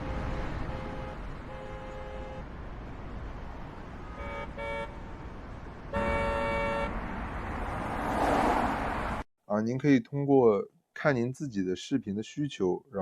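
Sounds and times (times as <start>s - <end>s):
car horns honking: 0.0s - 2.5s, 4.0s - 5.2s, 5.9s - 7.1s
traffic hum: 0.0s - 10.5s.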